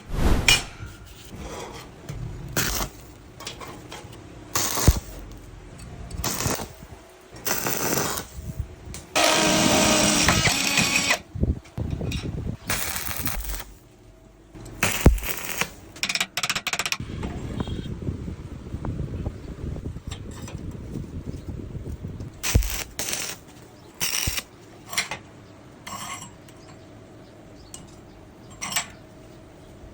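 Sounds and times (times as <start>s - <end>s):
power tool on metal: 9.2s - 11.2s, 22.4s - 23.4s, 24.0s - 24.5s.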